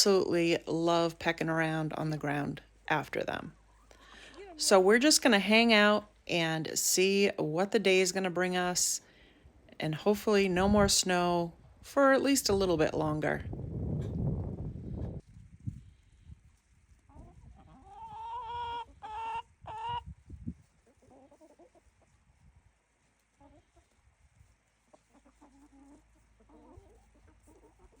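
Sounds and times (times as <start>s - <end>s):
hen clucking: 17.1s - 20.1s, 24.8s - 28.0s.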